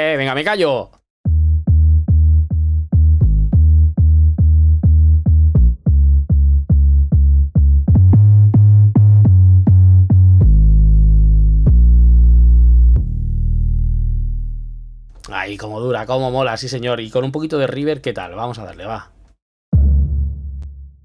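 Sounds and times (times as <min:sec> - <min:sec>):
synth bass notes: 0:01.3 - 0:15.2.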